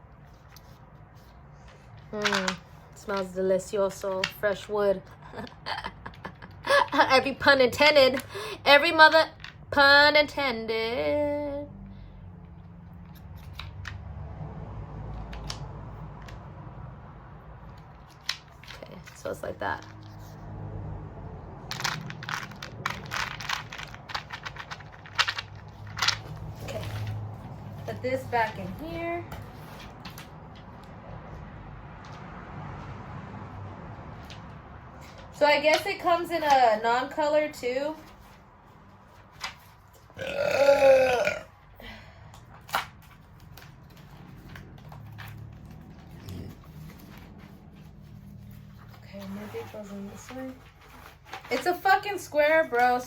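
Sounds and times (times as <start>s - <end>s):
packaging rustling and clicking: 21.7s - 27.3s.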